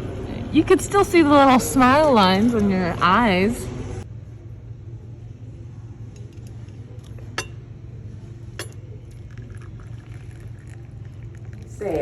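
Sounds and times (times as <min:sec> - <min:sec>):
steady low hum: 0:03.0 - 0:12.0.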